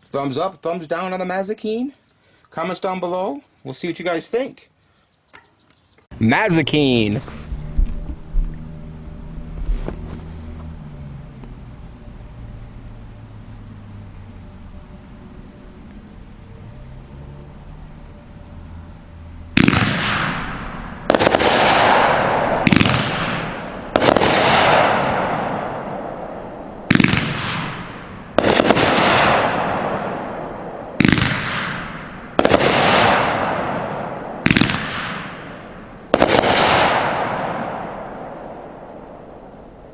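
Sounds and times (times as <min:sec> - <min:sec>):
firework bangs: 0:19.5 - 0:39.9
firework stars hissing and crackling: 0:19.6 - 0:25.7.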